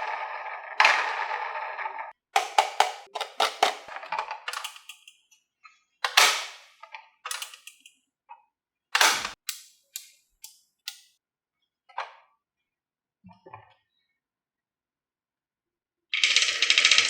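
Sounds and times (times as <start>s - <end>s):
marbles clacking in wooden run: 16.2s - 17.0s.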